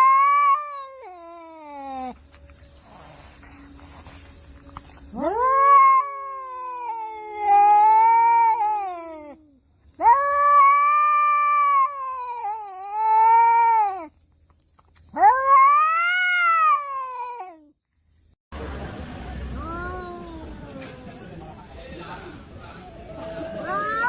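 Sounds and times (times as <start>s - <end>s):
cats yowling: 0.0s - 2.2s, 5.1s - 14.1s, 15.1s - 17.7s.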